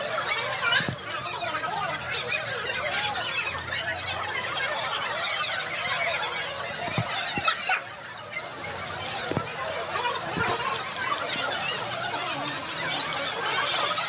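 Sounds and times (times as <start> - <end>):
children chattering and squealing: 0.0 - 14.0.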